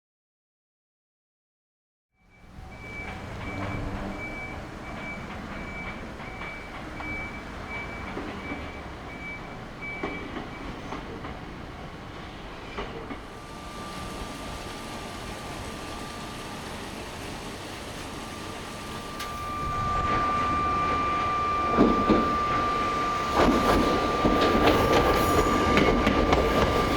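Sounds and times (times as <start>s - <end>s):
level crossing alarm beeping: 2.2s - 11.0s, 12.7s - 26.9s
train rumbling past: 2.2s - 26.9s
wheels clicking over rail joints: 2.5s - 21.0s
steady high tone: 13.3s - 26.9s.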